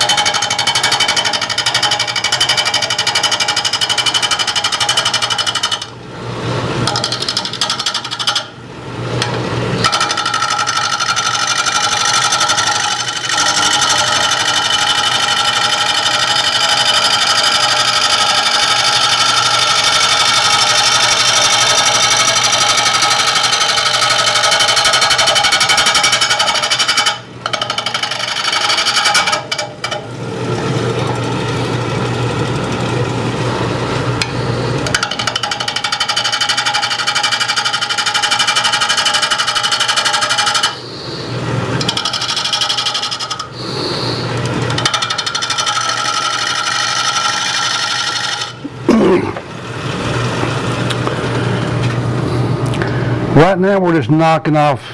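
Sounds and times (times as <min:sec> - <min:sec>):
lathe gouge chattering on wood: 0:00.0 - 0:06.0, 0:06.8 - 0:08.5, 0:09.8 - 0:30.0, 0:34.9 - 0:40.8, 0:41.8 - 0:48.6
lathe hum: 0:00.0 - 0:48.8.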